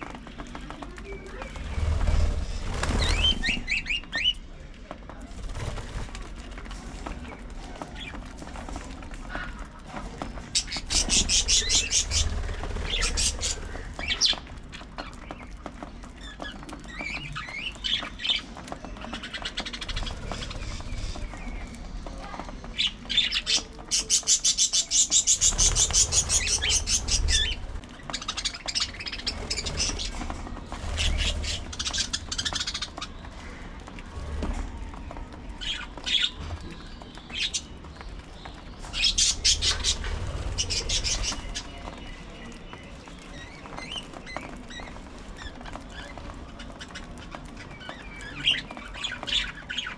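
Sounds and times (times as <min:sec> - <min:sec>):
budgerigars chattering and chirping: 0:10.4 - 0:15.4, 0:22.7 - 0:33.2, 0:35.6 - 0:49.9.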